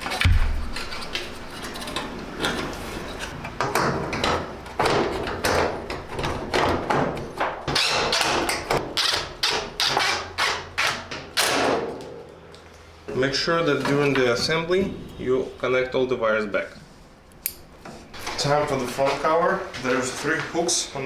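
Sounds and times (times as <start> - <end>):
sheet metal knocks and scrapes: 0.0 - 7.6
heavy thump: 0.2 - 0.8.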